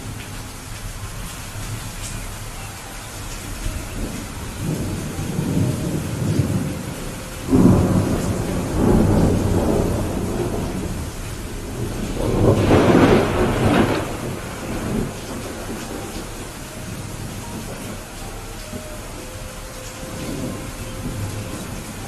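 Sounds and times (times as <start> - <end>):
steady rain: 0.0 - 22.0
thunder rolling: 3.5 - 18.9.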